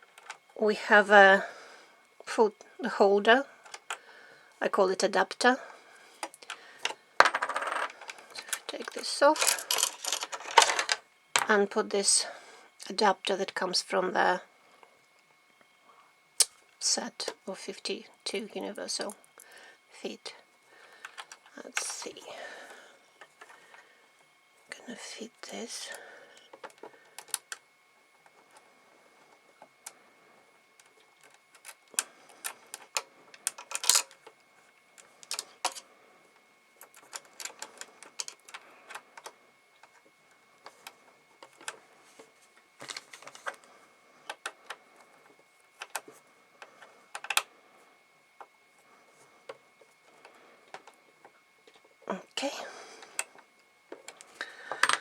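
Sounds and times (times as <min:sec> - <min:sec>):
small clicks of metal and plastic parts: 0:00.1 - 0:00.4, 0:03.6 - 0:04.0, 0:06.2 - 0:11.5, 0:21.0 - 0:22.2, 0:26.4 - 0:27.6, 0:30.7 - 0:35.9, 0:36.8 - 0:43.7, 0:44.3 - 0:47.5, 0:49.4 - 0:51.9.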